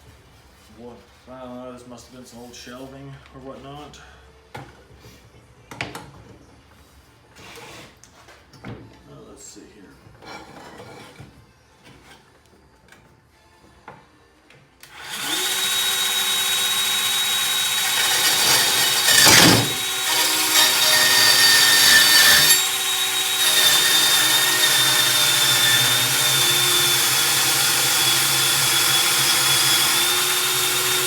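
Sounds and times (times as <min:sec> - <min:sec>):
bandsaw cutting metal: 0:14.9 - 0:31.0.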